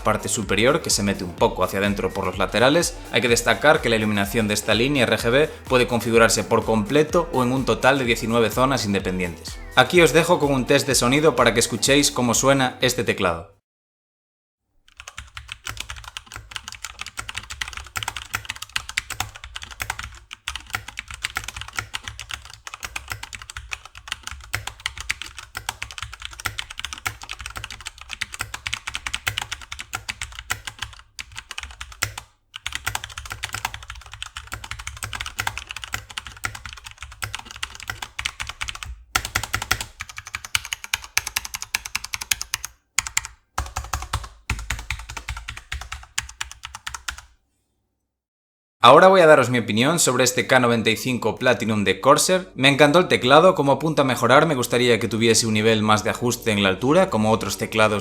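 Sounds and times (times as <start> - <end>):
fast mechanical keyboard typing: 14.9 - 47.3.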